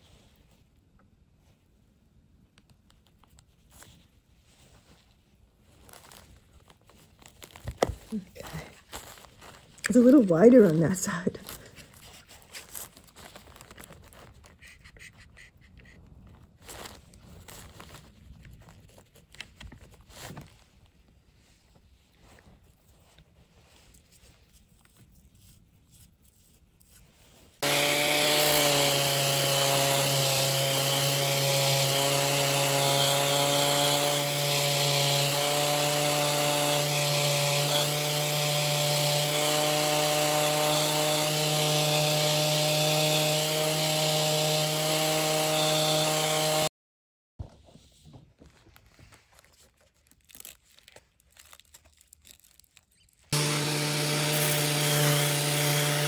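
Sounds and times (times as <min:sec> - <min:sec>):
power tool working wood: 0:27.6 - 0:46.7, 0:53.3 - 0:56.0.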